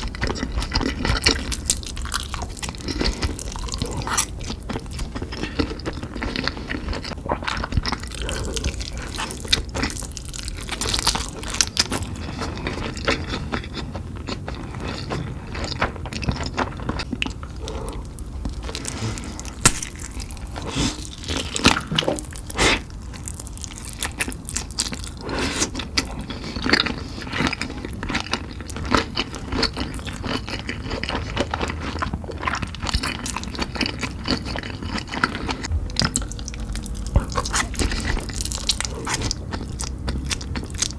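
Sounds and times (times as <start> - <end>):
wet chewing: 0.0 - 40.9
slurping noodles: 17.6 - 22.9.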